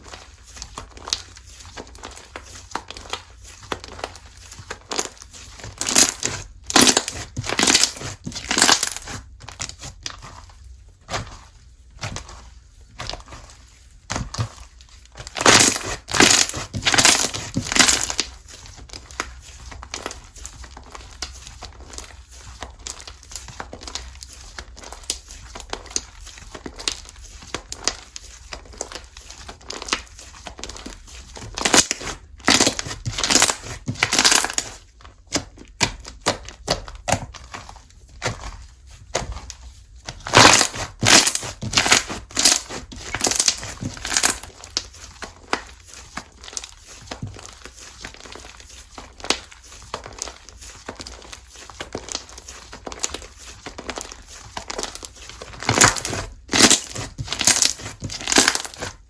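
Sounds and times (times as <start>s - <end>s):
slime crackling when squeezed: 40.2s - 44.9s, 55.6s - 58.9s.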